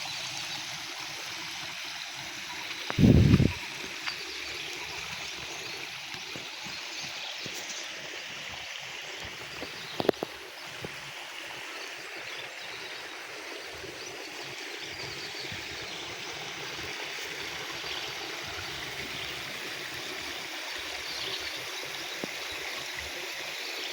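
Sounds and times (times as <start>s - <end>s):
water trickling: 0.0s - 23.9s.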